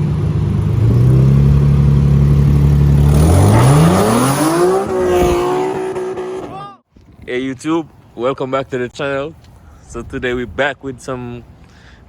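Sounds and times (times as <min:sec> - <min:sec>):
car engine revving: 0:00.7 - 0:06.8.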